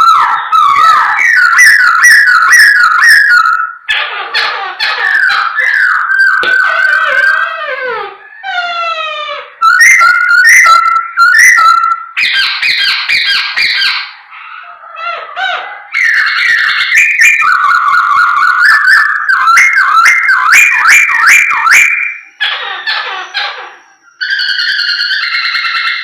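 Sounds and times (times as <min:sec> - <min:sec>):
bird singing whistled phrases: 0:00.0 - 0:03.8, 0:05.1 - 0:07.6, 0:09.6 - 0:13.9, 0:16.0 - 0:22.4.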